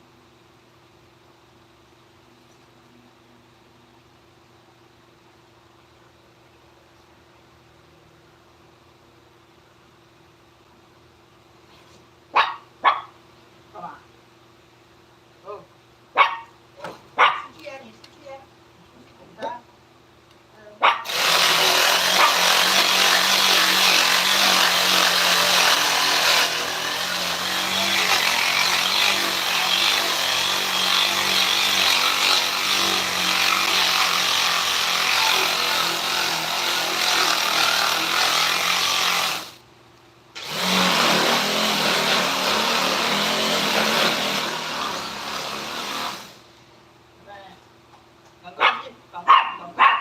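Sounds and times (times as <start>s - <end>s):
electric power tool cutting wood: 21.1s - 39.6s, 40.4s - 46.5s.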